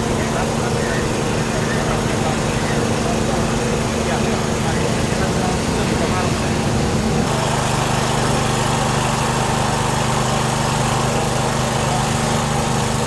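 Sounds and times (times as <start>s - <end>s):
small engine idling: 7.2s - 13.0s.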